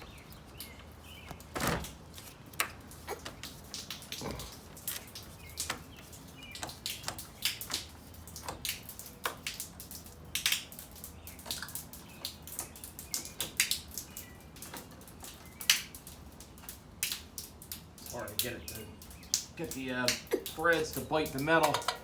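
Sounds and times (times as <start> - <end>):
clicks and taps on metal: 4.8 - 14.0, 16.7 - 22.0.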